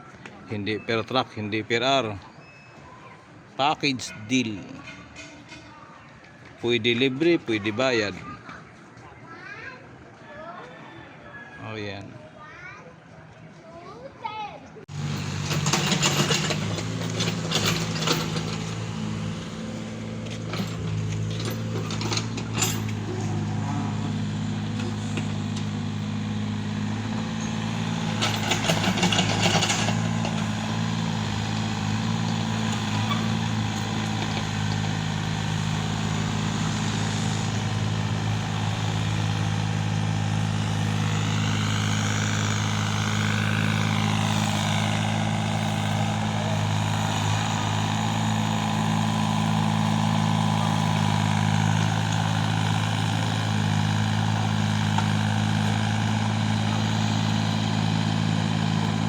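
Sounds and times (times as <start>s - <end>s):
heavy diesel engine running: 14.9s - 59.0s
clattering: 15.0s - 19.0s, 20.2s - 23.4s.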